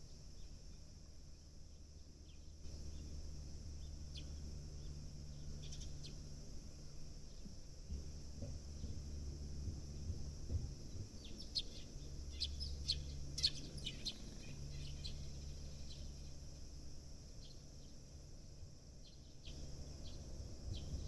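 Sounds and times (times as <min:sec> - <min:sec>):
sparrows chirping: 0:11.3 - 0:16.2.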